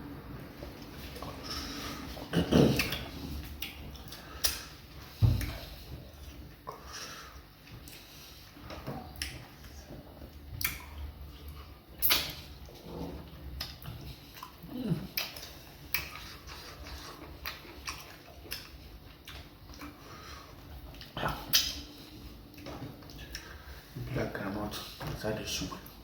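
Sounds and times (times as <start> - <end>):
mouth smacks while chewing: 2.7 - 4.8, 5.4 - 23.6.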